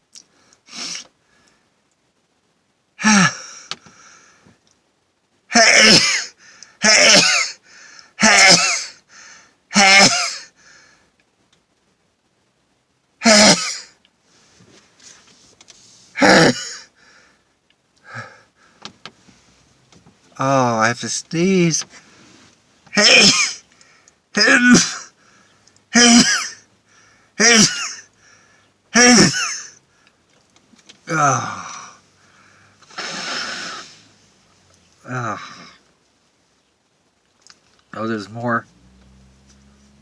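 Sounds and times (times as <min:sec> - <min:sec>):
man sneezing: 0:00.7 - 0:01.1, 0:03.0 - 0:03.6, 0:05.5 - 0:07.6, 0:08.2 - 0:09.0, 0:09.7 - 0:10.5, 0:13.2 - 0:14.0, 0:16.2 - 0:16.9, 0:22.9 - 0:23.7, 0:24.4 - 0:25.2, 0:25.9 - 0:26.6, 0:27.4 - 0:28.1, 0:28.9 - 0:29.8, 0:31.1 - 0:32.0, 0:32.8 - 0:34.0, 0:35.1 - 0:35.8.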